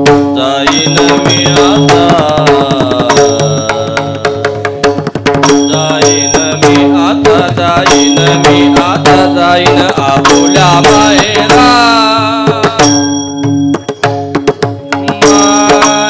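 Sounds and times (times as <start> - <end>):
fast hand drum strokes: 0.0 - 16.0
pitched melodic line: 12.8 - 16.0.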